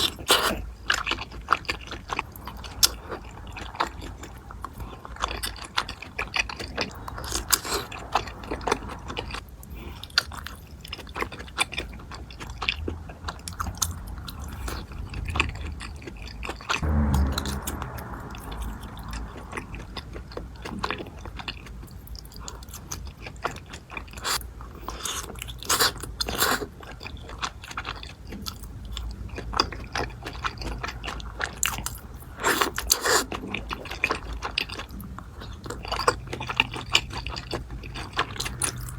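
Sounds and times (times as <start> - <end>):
chewing and biting: 0.0 - 7.8, 22.4 - 38.9.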